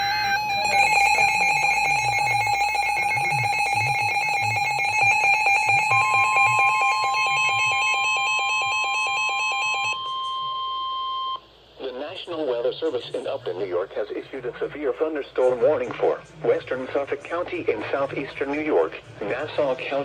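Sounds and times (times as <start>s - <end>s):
buzzy pulsing alarm tone: 0.0s - 11.4s.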